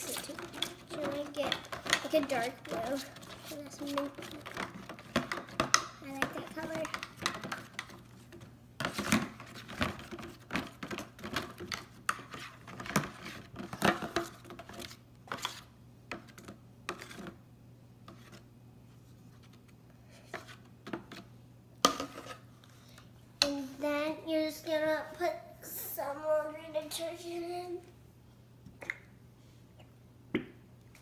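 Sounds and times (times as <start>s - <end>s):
utensil scraping mixing bowl: 0.0s - 17.4s.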